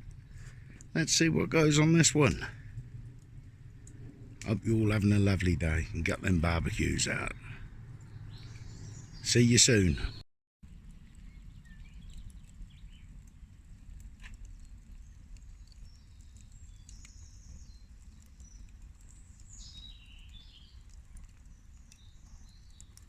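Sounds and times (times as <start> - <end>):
low rumble: 0.0 - 9.3
birds chirping: 0.0 - 10.2, 14.9 - 23.0
faint clicks: 2.5 - 4.2, 10.8 - 23.0.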